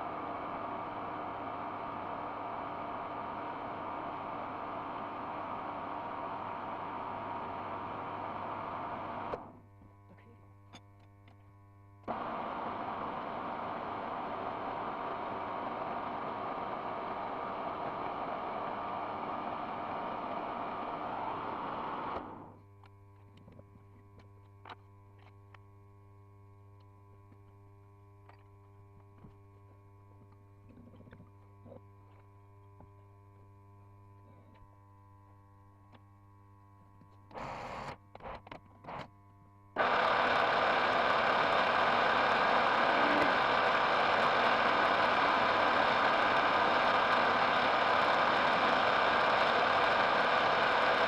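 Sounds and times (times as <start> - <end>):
lathe whirring and winding down: 0.0 - 9.5, 12.1 - 22.6, 39.8 - 51.0
electrical hum: 39.6 - 51.0.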